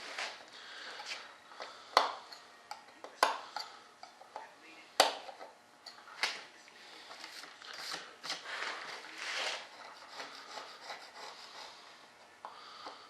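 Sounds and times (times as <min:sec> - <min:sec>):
scraping and rubbing handling noises: 0:00.0 - 0:01.3, 0:05.3 - 0:12.4.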